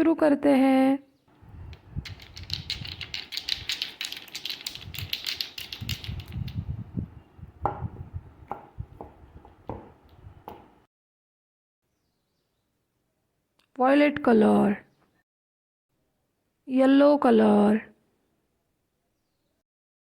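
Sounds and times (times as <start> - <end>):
small hard objects clicking: 1.6 - 6.7
sharp knocks: 8.5 - 10.8.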